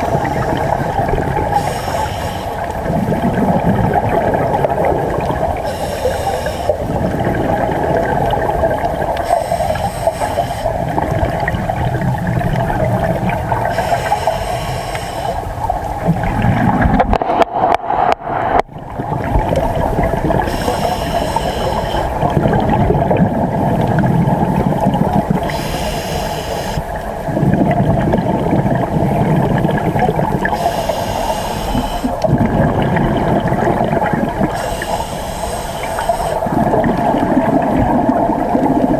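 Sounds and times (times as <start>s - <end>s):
regulator inhalation hiss: 0.0s - 0.8s, 1.5s - 2.7s, 5.6s - 7.0s, 9.2s - 10.8s, 13.6s - 15.5s, 20.4s - 22.1s, 25.4s - 26.9s, 30.4s - 32.2s, 34.4s - 36.5s
exhaled air bubbling: 0.0s - 38.9s.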